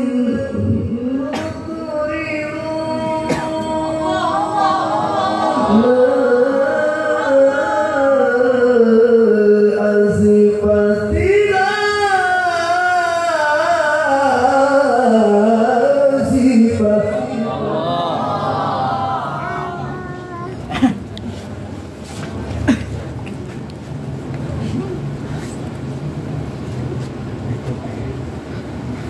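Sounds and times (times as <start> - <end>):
man reciting melodically: 0.0 - 20.0.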